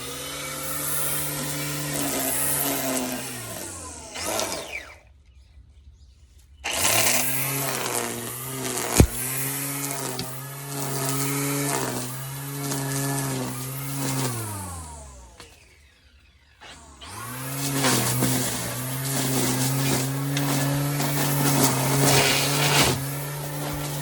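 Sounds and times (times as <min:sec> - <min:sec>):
electric trimmer motor whining: 0:00.0 - 0:05.2, 0:06.6 - 0:24.0
sharp knock: 0:09.0 - 0:09.2.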